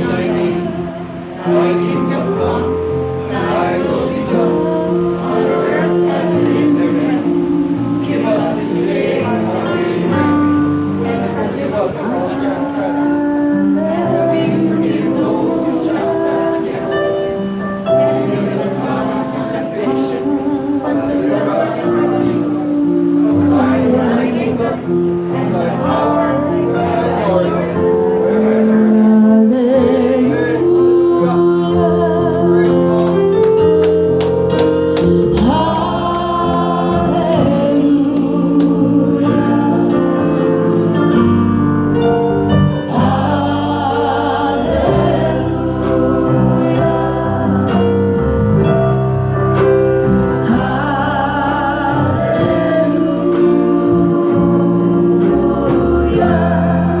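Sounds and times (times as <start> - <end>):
choir singing: 0.0 - 57.0
sustained instrumental chords: 0.0 - 57.0.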